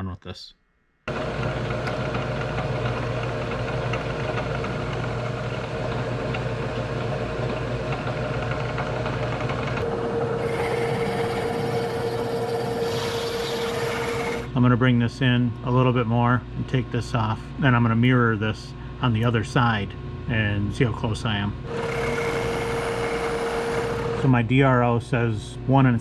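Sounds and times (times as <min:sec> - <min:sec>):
steady machine whine: 0:01.1 - 0:14.5, 0:21.6 - 0:24.5
milling machine cutting metal: 0:09.8 - 0:14.5, 0:21.7 - 0:24.3.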